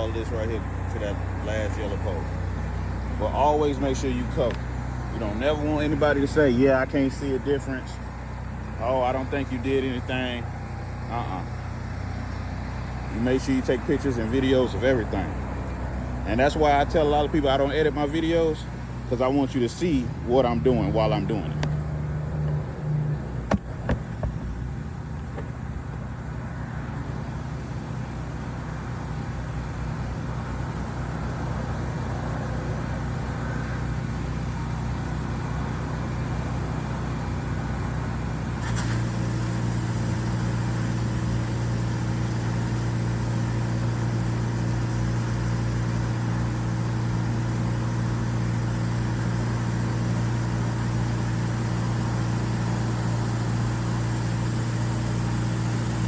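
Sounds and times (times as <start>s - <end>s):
gas engine running: 0.0s - 15.6s, 38.6s - 56.0s.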